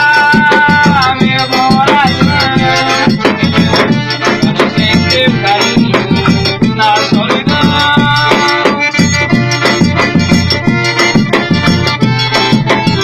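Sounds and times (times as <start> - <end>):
accordion melody: 0.0 - 13.0
drum and percussion beat: 0.0 - 13.0.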